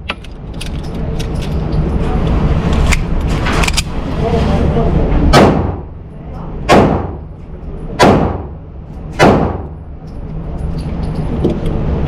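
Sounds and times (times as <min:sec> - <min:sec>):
pistol shots echoing: 0:05.3 - 0:05.8, 0:06.7 - 0:07.2, 0:08.0 - 0:08.6, 0:09.2 - 0:09.7.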